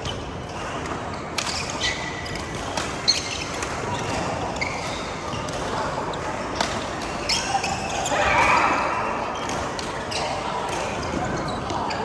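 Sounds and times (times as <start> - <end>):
rackets hitting shuttlecock: 0.0 - 7.8.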